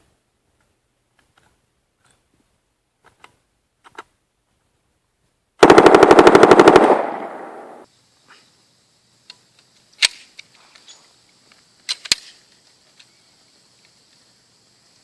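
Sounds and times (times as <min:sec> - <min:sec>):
gunshot echo: 0:05.6 - 0:07.8
submachine gun burst: 0:05.6 - 0:07.8.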